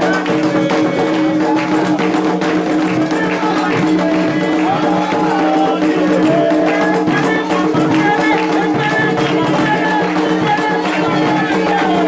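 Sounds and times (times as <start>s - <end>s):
steady percussion: 0.0s - 12.0s
voices singing a chant: 0.0s - 12.0s.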